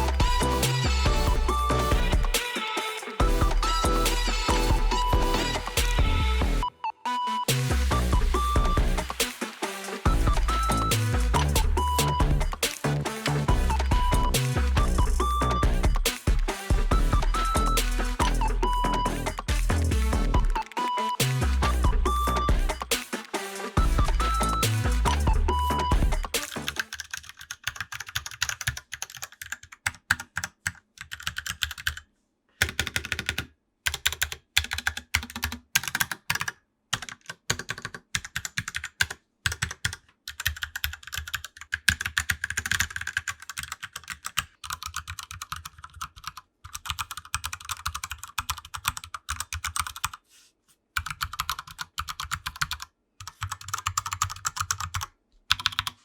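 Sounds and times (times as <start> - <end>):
fast mechanical keyboard typing: 24.0 - 50.2, 51.0 - 56.0.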